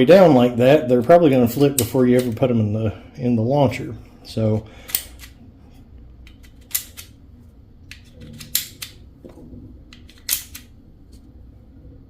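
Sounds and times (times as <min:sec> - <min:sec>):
sharp magazine clicks: 0:04.8 - 0:05.4, 0:06.3 - 0:07.2, 0:10.0 - 0:10.7.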